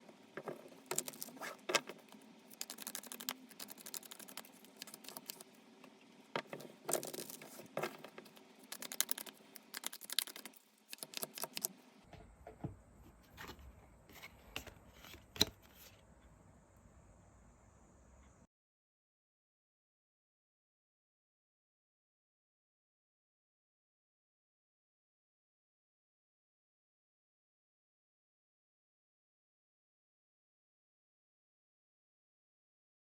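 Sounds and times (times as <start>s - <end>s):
faint low hum: 0.0s - 18.5s
cards being shuffled: 0.6s - 5.5s, 6.4s - 11.7s.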